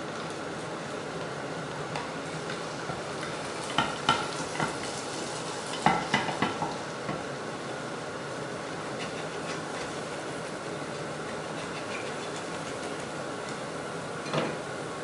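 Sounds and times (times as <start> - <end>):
omelette sizzling in oil: 2.2 - 14.1.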